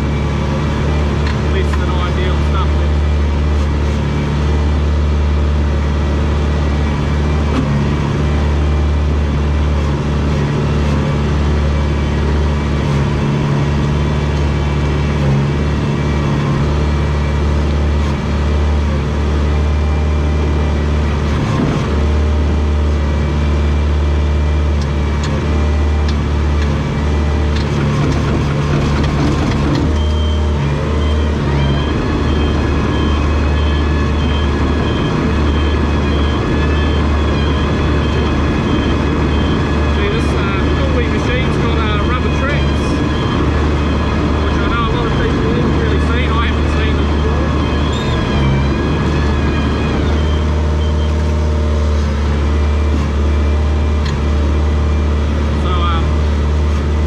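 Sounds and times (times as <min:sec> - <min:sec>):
bulldozer diesel engine under load: 0:00.0 - 0:57.0
high repeated beeping: 0:29.9 - 0:51.5.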